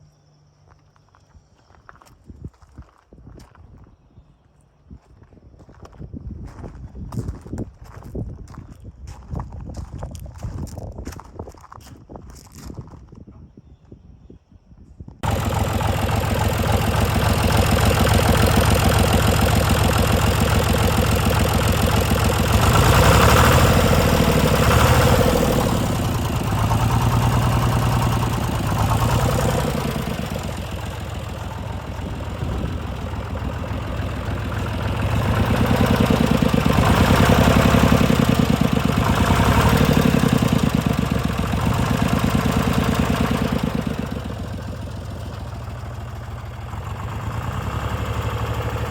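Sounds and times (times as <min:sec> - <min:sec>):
tractor diesel engine running: 0:15.2 - 0:48.9.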